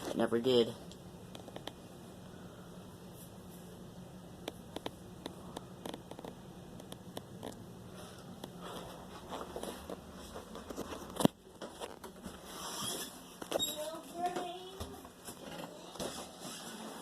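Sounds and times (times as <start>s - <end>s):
faint low hum: 0.0s - 17.0s
rustling: 5.8s - 17.0s.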